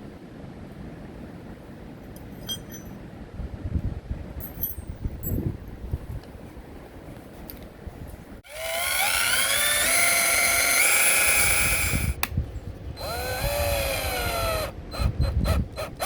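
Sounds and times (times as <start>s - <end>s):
power drill whining: 8.5s - 12.2s, 13.0s - 15.1s.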